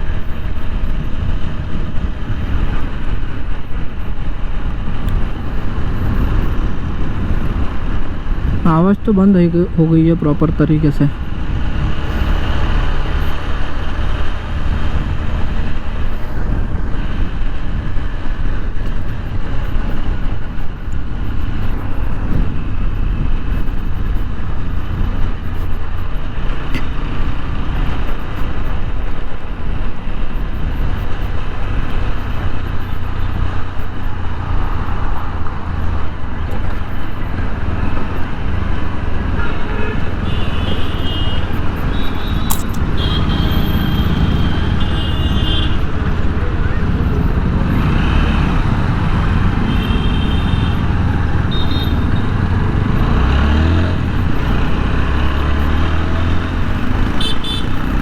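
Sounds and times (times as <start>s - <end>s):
road noise: 0.0s - 58.0s
wind: 0.0s - 58.0s
motorcycle engine running: 11.1s - 58.0s.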